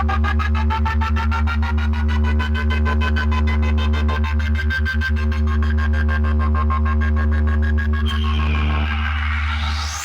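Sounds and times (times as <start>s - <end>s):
low bass drone: 4.8s - 10.0s.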